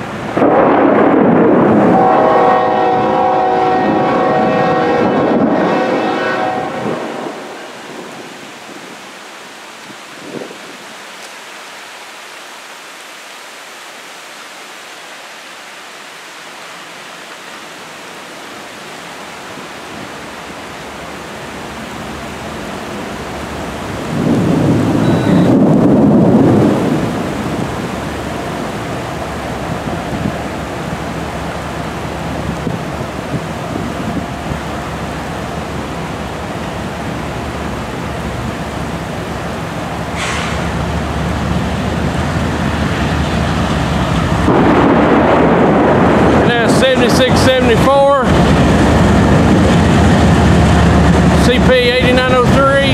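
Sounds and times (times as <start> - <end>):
steady rain: 0.0 - 52.9
thunder clap and rumble: 0.1 - 8.2, 23.8 - 31.0, 40.4 - 52.9.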